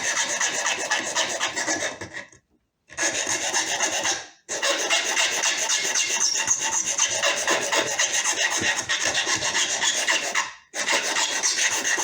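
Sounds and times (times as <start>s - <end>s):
tool scraping metal plate: 3.1s - 12.0s.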